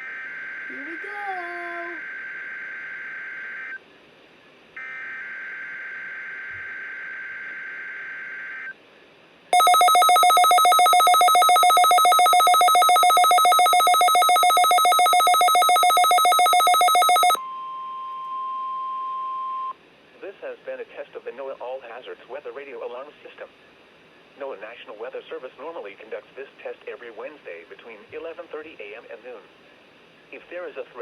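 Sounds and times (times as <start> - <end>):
pulsing two-pitch electronic alarm: 9.6 - 17.4.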